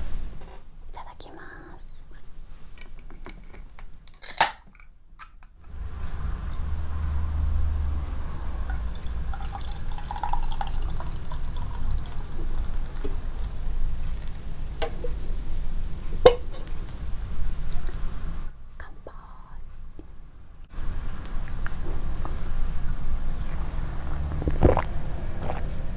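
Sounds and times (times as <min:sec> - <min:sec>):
liquid pouring into a glass: 0:08.6 - 0:12.9.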